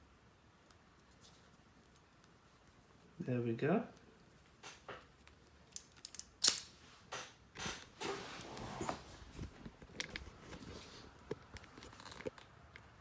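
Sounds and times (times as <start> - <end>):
cloth rubbing on plastic prop: 8.0 - 12.0.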